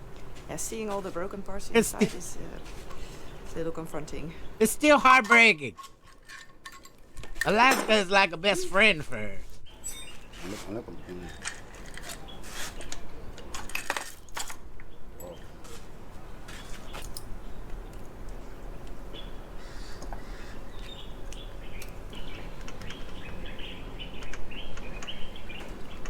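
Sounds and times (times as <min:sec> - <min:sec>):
metallic clinks of tools: 0:09.8 - 0:10.2
birds cawing: 0:19.0 - 0:24.2.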